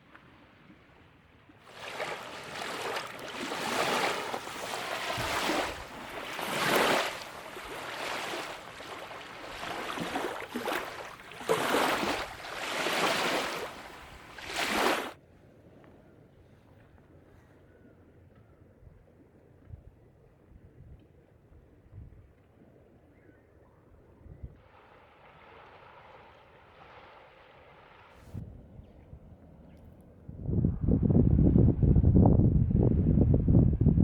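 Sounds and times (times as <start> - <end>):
waves washing onto shore: 1.7 - 15.2.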